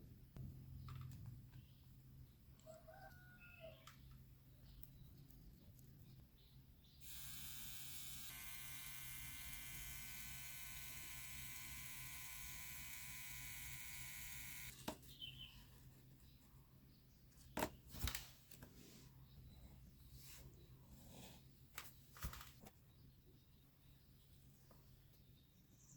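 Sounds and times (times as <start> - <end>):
small electric motor whining: 7.0 - 14.8.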